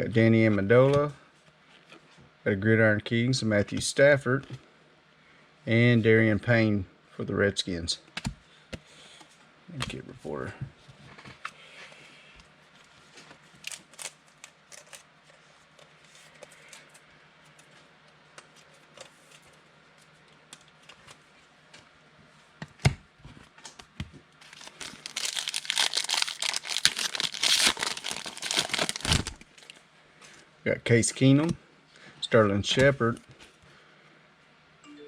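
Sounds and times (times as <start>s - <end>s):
wrapper crinkling and tearing: 13.5s - 15.1s, 24.4s - 29.8s.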